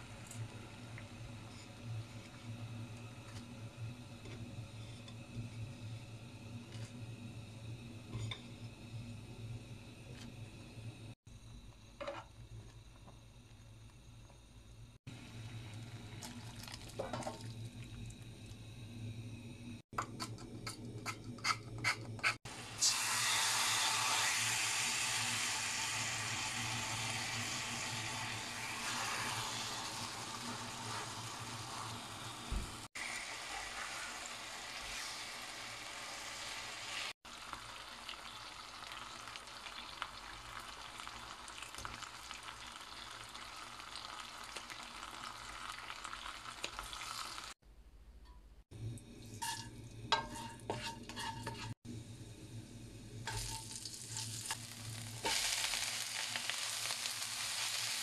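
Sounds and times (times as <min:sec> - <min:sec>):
food sizzling in oil: 0:22.2 - 0:47.6, 0:49.0 - 0:58.0
stirring scrapes: 0:49.4 - 0:51.8.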